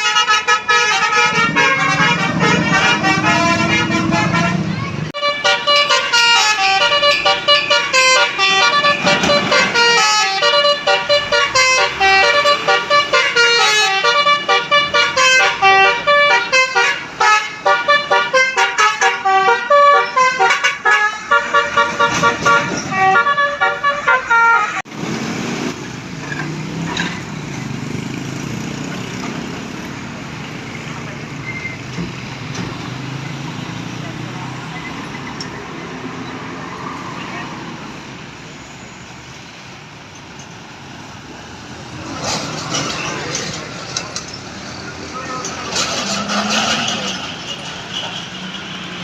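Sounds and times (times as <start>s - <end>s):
musical horn melody: 0.0s - 24.9s
vehicle engine noise: 0.0s - 49.0s.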